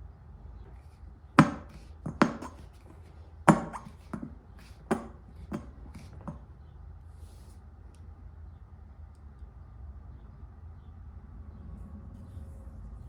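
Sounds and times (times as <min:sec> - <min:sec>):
hard objects knocking and clanking: 0:01.4 - 0:06.4.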